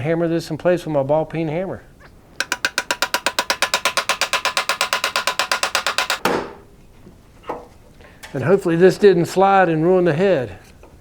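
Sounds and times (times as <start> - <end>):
hammer tapping on metal: 2.4 - 6.3.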